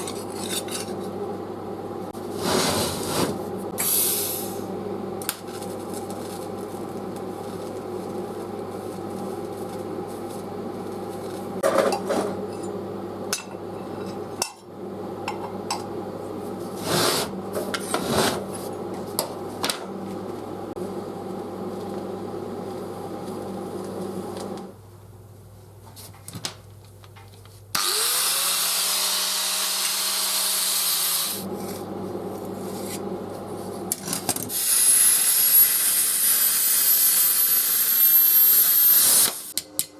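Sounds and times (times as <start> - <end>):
loud hiss: 3.8 - 4.7, 34.5 - 37.6.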